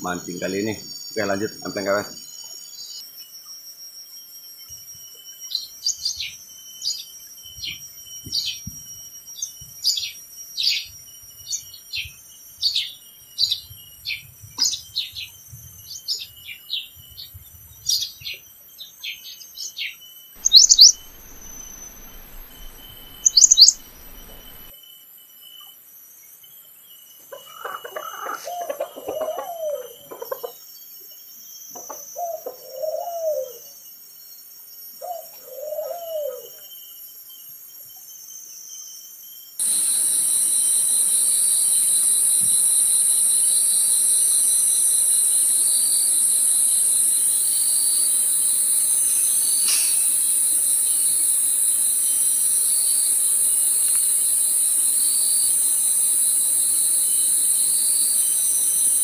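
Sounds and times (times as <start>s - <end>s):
cicadas droning: 0.0s - 59.0s
bird cooing: 20.4s - 24.7s, 28.1s - 30.1s, 32.2s - 33.6s, 35.1s - 36.6s.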